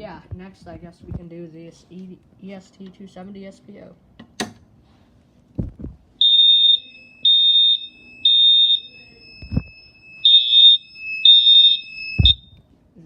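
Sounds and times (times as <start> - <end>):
high-pitched alarm horn beeps: 6.2 - 12.6.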